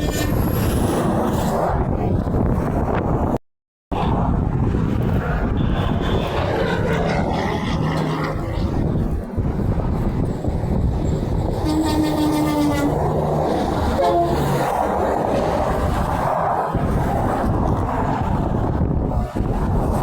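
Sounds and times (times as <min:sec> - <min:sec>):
highway traffic noise: 0:00.0 - 0:20.0
truck air horn blasts: 0:11.6 - 0:13.0, 0:13.9 - 0:14.7.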